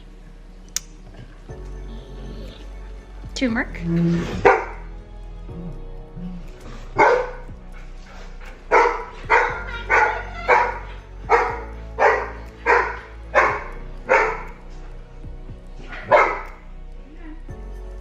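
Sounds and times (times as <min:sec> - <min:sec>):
small dog barking: 0:07.0 - 0:07.4, 0:08.7 - 0:14.5, 0:15.9 - 0:16.6.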